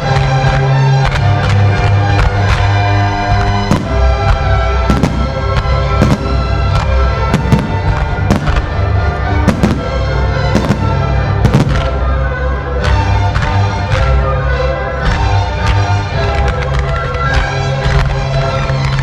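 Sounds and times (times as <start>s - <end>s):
loud opera music: 0.0s - 19.0s
fireworks bangs: 3.3s - 14.2s.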